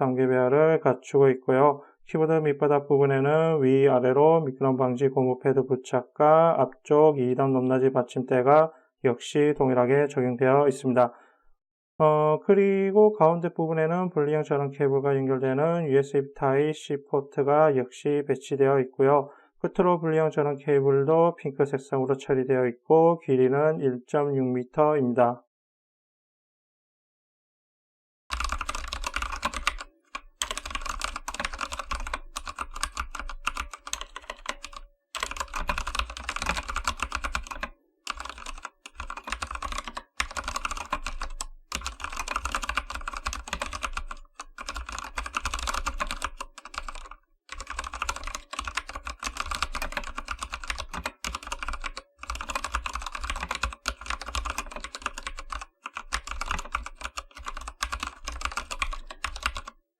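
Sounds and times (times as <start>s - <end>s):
mechanical keyboard typing: 28.3s - 59.8s.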